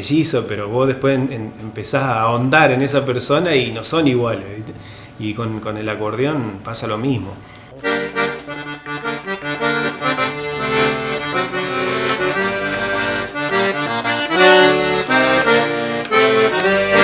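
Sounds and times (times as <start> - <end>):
accordion playing lively melody: 7.7 - 17.0.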